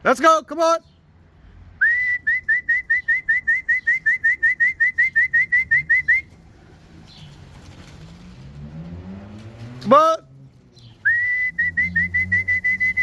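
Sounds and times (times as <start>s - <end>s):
person whistling: 1.8s - 6.2s, 11.1s - 13.0s.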